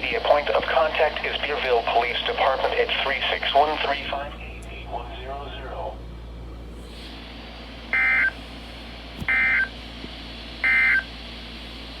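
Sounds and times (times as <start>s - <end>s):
emergency alert data tones: 7.9s - 8.4s, 9.3s - 9.7s, 10.6s - 11.1s.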